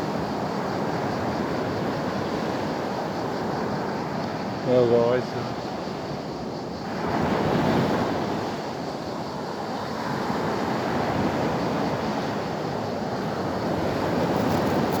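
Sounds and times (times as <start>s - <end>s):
sea waves washing onto shore: 13.4s - 15.0s
wind on microphone: 13.6s - 15.0s.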